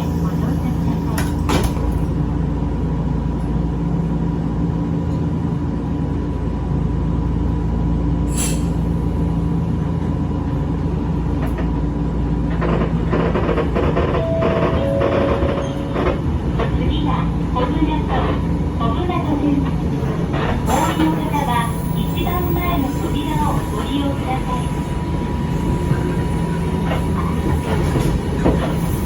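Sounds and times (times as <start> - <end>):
train running with low rumble: 0.0 - 29.0
brief hiss: 8.3 - 8.8.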